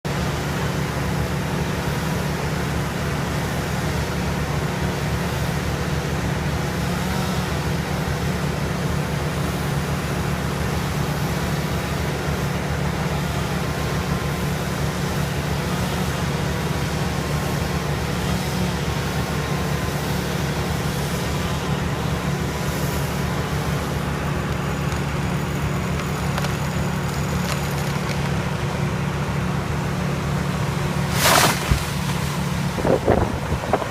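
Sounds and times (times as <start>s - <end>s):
heavy machinery engine drone: 0.1s - 33.9s.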